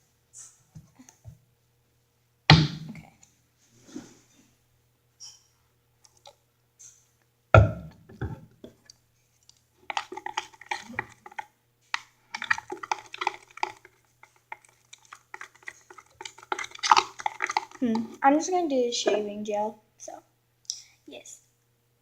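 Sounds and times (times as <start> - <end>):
heavy thump: 7.6 - 8.4.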